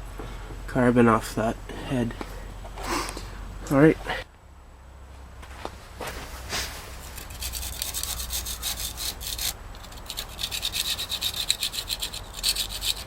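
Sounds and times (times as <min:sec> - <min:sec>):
putty knife scraping metal: 0:07.0 - 0:13.0.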